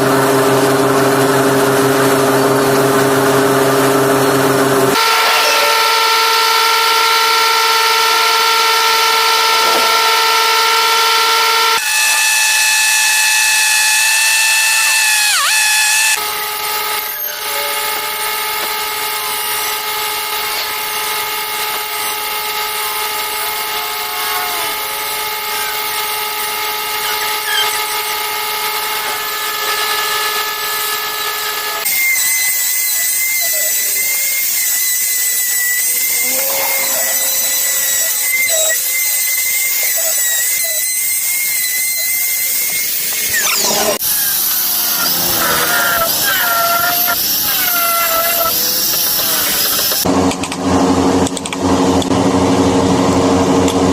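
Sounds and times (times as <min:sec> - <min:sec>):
power tool motor whining: 0:00.0 - 0:50.4.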